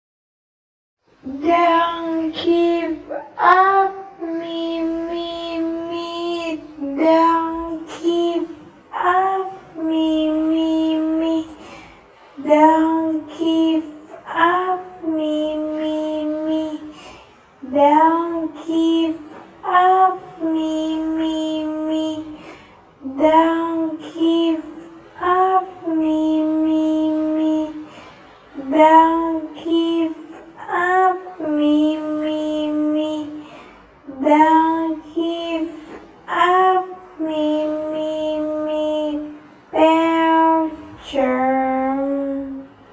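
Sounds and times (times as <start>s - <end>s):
high childlike voice singing: 1.3s - 11.7s, 12.4s - 17.0s, 17.6s - 27.9s, 28.6s - 33.4s, 34.1s - 42.7s
person singing long notes: 36.3s - 42.7s.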